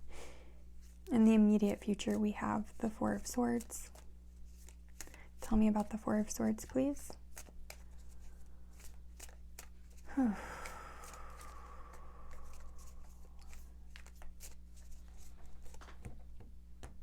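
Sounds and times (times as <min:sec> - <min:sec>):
cards rustling: 0:00.8 - 0:16.1
cards clicking and slapping: 0:03.2 - 0:16.1.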